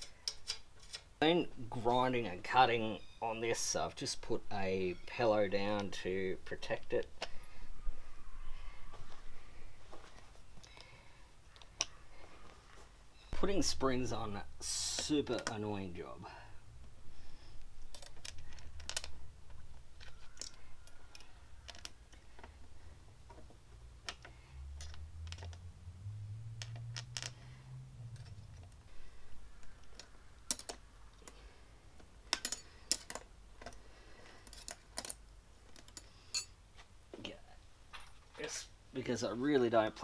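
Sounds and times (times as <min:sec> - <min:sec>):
low hum: 0:07.3 - 0:10.9, 0:22.7 - 0:31.2
metallic clicks and clinks: 0:17.8 - 0:22.6, 0:24.0 - 0:25.7, 0:29.6 - 0:31.4, 0:32.3 - 0:36.6.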